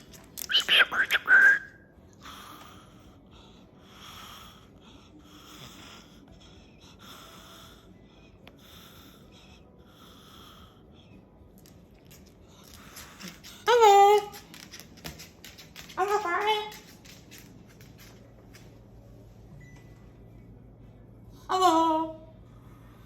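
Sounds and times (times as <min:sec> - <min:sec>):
soft breathy wheezing puffs: 0:02.2 - 0:11.4.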